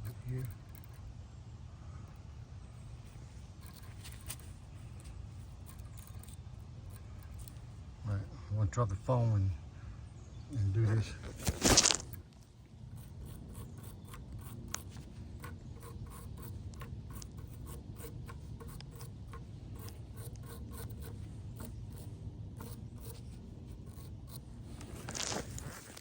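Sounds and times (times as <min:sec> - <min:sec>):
low steady hum: 0:00.0 - 0:26.0
small brush scrubbing metal: 0:12.9 - 0:26.0.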